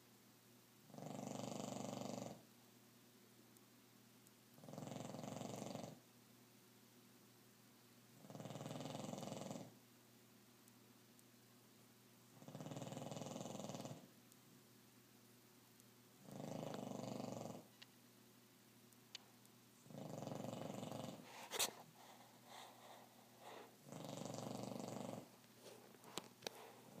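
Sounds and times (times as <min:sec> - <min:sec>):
dog snoring: 0:00.9 - 0:02.4, 0:04.6 - 0:06.0, 0:08.2 - 0:09.8, 0:12.3 - 0:14.1, 0:16.2 - 0:17.7, 0:19.8 - 0:25.4.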